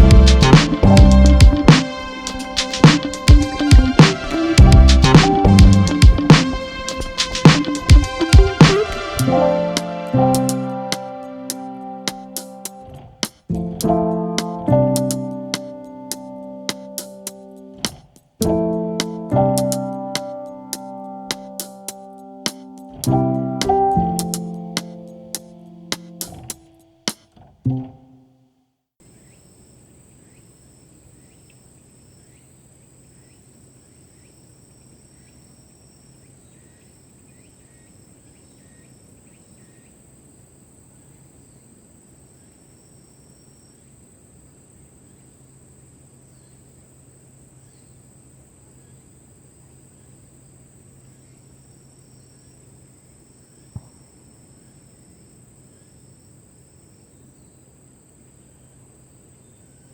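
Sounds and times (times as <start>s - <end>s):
sharp click: 19.6s - 27.3s
insects trilling: 29.0s - 59.9s.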